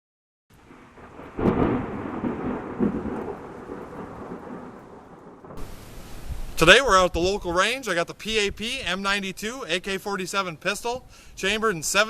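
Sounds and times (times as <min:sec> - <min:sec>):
loud boom with rolling rumble: 0:00.7 - 0:05.7.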